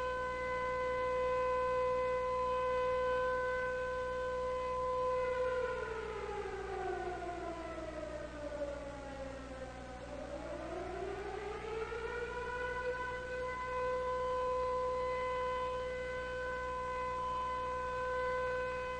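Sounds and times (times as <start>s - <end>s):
air-raid siren: 0.0s - 18.9s.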